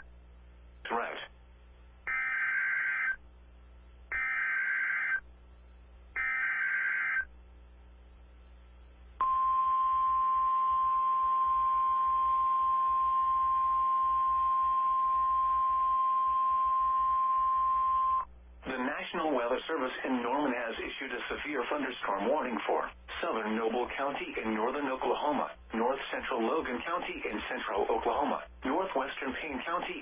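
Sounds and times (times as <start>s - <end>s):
steady high alarm tone: 2.1s - 3.2s, 4.1s - 5.2s, 6.2s - 7.3s, 9.2s - 18.3s
harsh data bursts: 4.1s - 5.2s.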